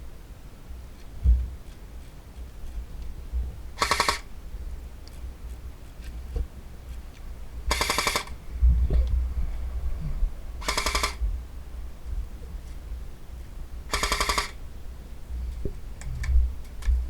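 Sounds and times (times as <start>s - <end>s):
airsoft gun full-auto bursts: 3.8s - 4.3s, 7.7s - 8.4s, 10.6s - 11.2s, 13.9s - 14.6s.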